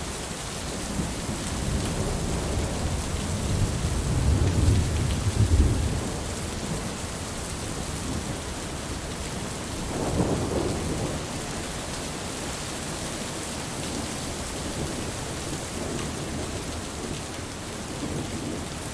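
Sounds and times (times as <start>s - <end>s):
steady rain falling: 0.0s - 18.9s
thunder rumbling: 1.7s - 6.8s.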